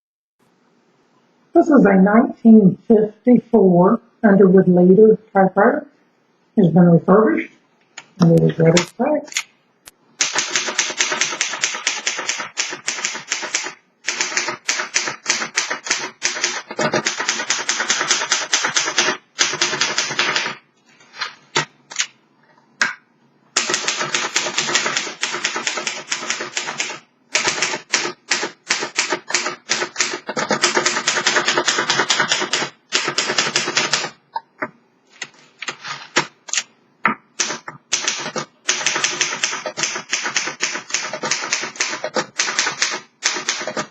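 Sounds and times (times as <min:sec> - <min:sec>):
manual typewriter fast typing: 0:10.2 - 0:20.6, 0:23.6 - 0:34.2, 0:37.4 - 0:43.9.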